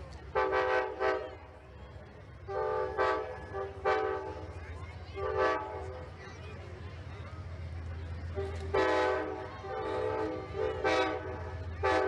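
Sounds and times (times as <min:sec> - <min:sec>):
locomotive horn blasts: 0:00.3 - 0:01.3, 0:02.5 - 0:04.5, 0:05.2 - 0:06.0, 0:08.4 - 0:12.0.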